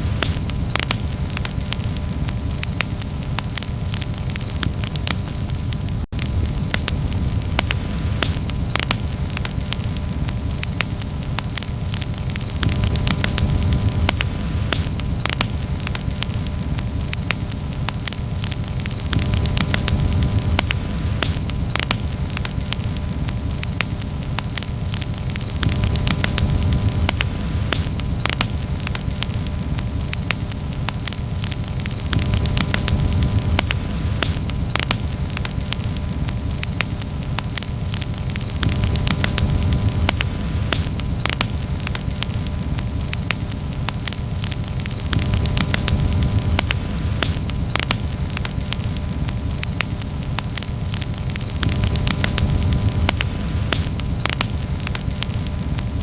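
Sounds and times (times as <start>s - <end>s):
campfire crackling and popping: 0.0s - 56.0s
low steady rumble: 0.0s - 56.0s.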